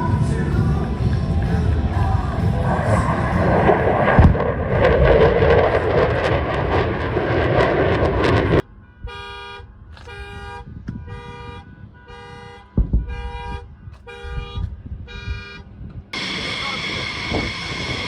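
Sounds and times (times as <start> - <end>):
loud steady roar: 0.0 - 8.6, 16.1 - 18.0
horn blasts: 8.2 - 18.0.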